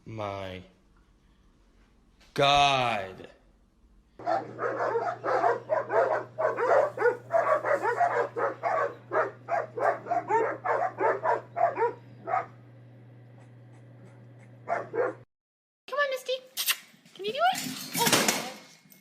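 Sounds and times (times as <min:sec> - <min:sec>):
low hum: 0:03.4 - 0:15.2
dog barking and yipping: 0:04.2 - 0:12.6, 0:14.6 - 0:15.3.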